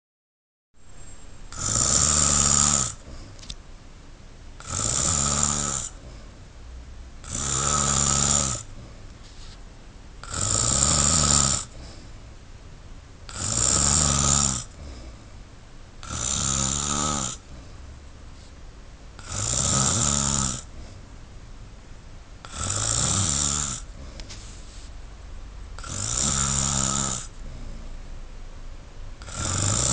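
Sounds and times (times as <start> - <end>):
man snoring: 1.5 - 3.2, 4.6 - 6.2, 7.2 - 8.9, 10.2 - 11.9, 13.3 - 15.2, 16.0 - 17.6, 19.2 - 20.8, 22.4 - 24.2, 25.8 - 28.0, 29.2 - 29.9
steady breathing: 2.9 - 3.5, 5.9 - 6.5, 8.6 - 9.6, 11.6 - 12.4, 14.6 - 15.5, 17.3 - 18.6, 23.8 - 25.0, 27.2 - 28.1.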